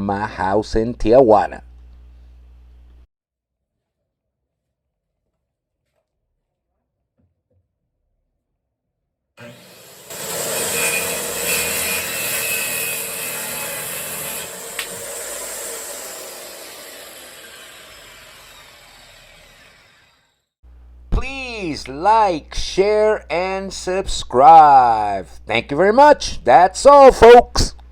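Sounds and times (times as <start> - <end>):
circular saw cutting board: 9.4 - 20.5.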